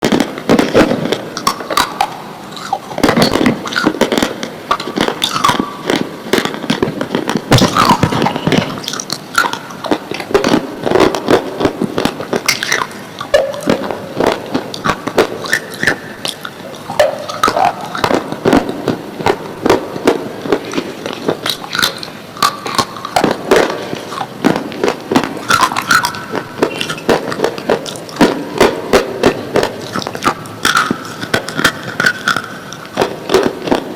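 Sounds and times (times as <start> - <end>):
crunching of chewed slate pencils: 1.4 - 19.8, 20.4 - 33.8.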